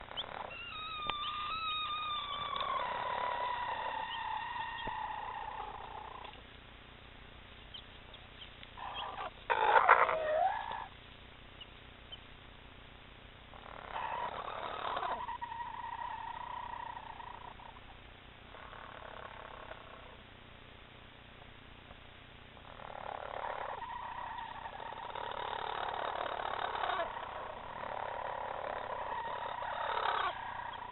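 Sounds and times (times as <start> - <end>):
faint chick peeps: 0.0 - 6.4
hens growling warning calls: 0.0 - 6.4, 8.8 - 11.0, 13.5 - 20.2, 22.6 - 30.9.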